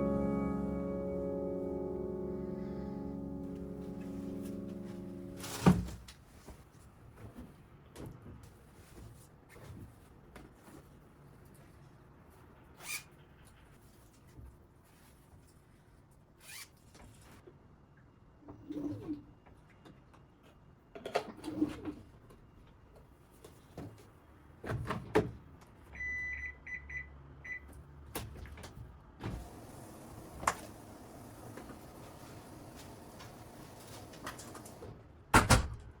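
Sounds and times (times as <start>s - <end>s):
short electronic appliance beeps: 26.0s - 27.6s.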